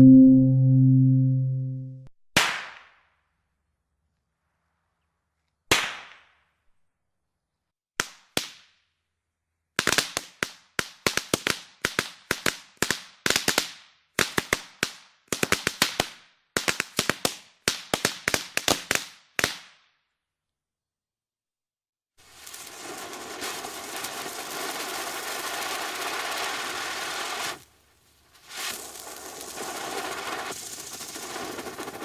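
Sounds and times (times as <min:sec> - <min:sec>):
fireworks bangs: 0:22.3 - 0:27.6, 0:28.3 - 0:32.0.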